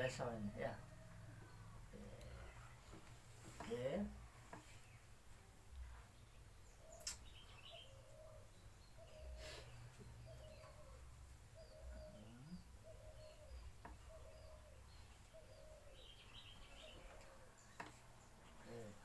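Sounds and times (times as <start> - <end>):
faint bird calls: 0.0 - 19.0
high bird chirps: 6.7 - 18.0.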